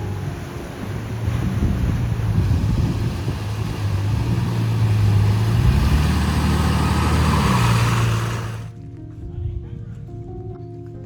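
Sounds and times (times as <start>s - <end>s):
vehicle engine droning: 0.0s - 8.7s
tyre and road noise: 0.0s - 9.1s.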